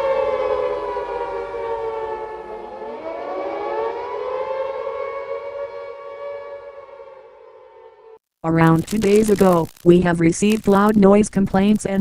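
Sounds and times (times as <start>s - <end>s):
civil defense siren wailing: 0.0s - 8.2s.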